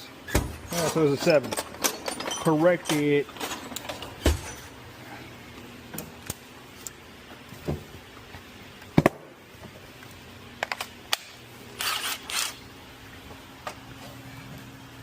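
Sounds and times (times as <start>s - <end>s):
tools and metal parts clicking: 0.6s - 4.7s, 10.6s - 12.6s.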